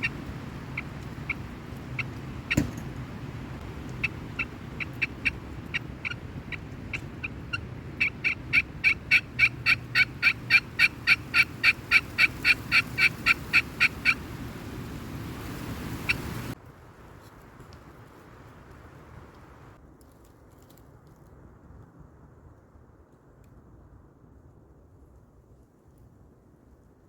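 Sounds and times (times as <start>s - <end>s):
low wind rumble: 0.0s - 20.0s, 20.9s - 27.0s
turkey yelps: 4.0s - 14.2s, 16.0s - 16.6s.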